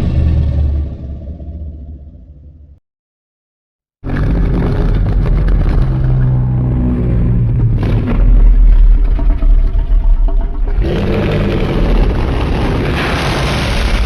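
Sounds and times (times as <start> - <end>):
monster rumbling roar: 4.1 - 14.0.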